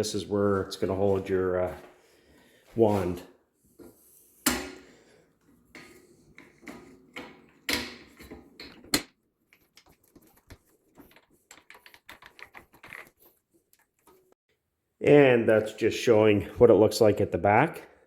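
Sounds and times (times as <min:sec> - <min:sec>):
plastic parts clicking and rattling: 0:06.4 - 0:14.3.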